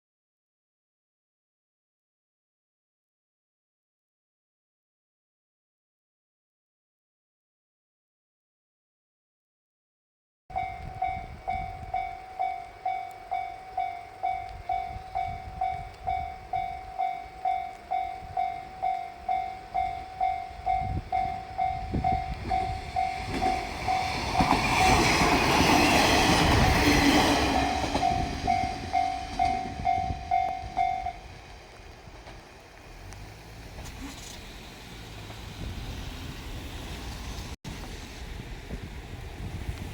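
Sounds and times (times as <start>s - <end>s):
level-crossing alarm ringing: 10.5s - 31.4s
diesel train passing: 10.5s - 39.9s.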